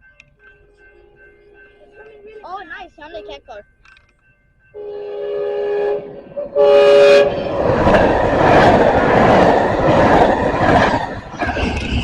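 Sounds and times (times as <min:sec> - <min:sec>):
train horn blasts: 0:04.8 - 0:07.6
rush of train passing: 0:04.8 - 0:12.0.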